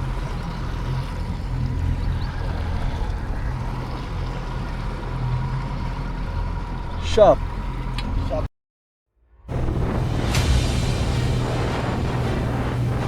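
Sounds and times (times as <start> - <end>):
outboard motor droning: 0.0 - 8.5, 9.5 - 13.0
water noise: 0.0 - 8.5, 9.5 - 13.0
wind noise: 9.5 - 13.0.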